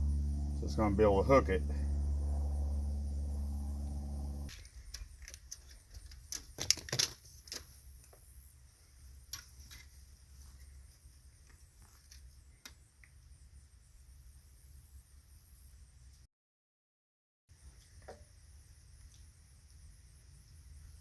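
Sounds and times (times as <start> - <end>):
machine hum: 0.0 - 5.3.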